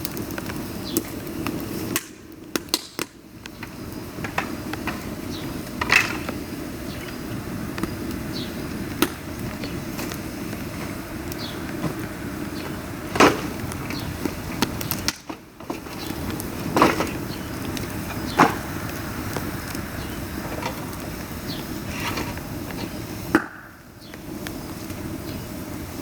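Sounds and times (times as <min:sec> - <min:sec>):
bamboo fire rushing: 0:00.0 - 0:26.0
sharp cracks of burning bamboo: 0:00.0 - 0:26.0.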